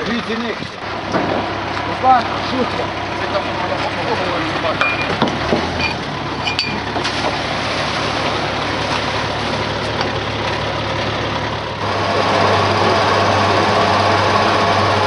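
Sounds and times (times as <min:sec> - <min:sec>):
engine running: 0:00.0 - 0:15.0
light clinks: 0:05.8 - 0:06.8.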